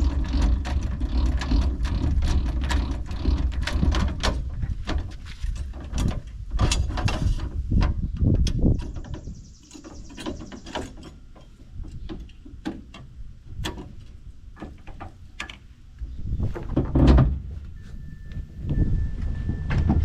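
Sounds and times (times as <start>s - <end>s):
metal clicks and clanks: 0.0s - 15.6s.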